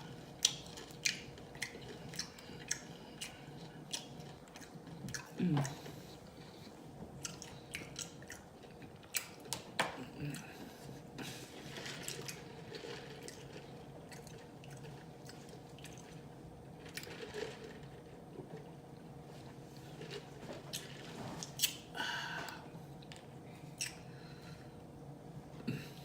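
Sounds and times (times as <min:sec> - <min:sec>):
faint steady hum: 0:00.0 - 0:26.0
wet chewing and lip smacking: 0:00.4 - 0:05.8, 0:07.2 - 0:09.6.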